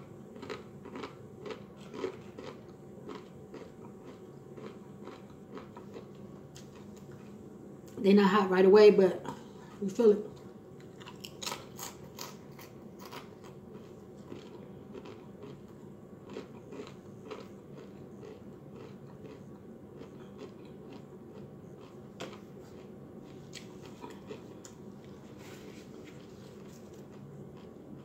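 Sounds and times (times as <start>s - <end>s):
crunching tortilla chips: 0.4s - 6.9s, 10.9s - 21.1s.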